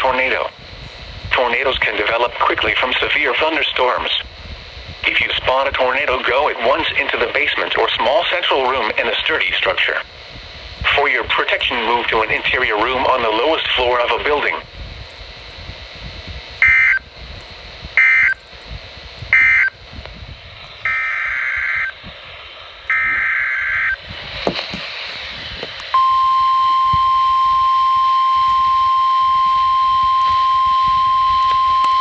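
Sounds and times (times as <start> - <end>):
warbling data tone bursts: 16.6 - 17.1, 18.0 - 18.4, 19.3 - 19.8, 20.8 - 22.0, 22.9 - 24.0
steady warning alarm tone: 16.6 - 17.2, 17.9 - 18.4, 19.3 - 19.8, 20.8 - 22.1, 22.7 - 24.0, 25.9 - 32.0.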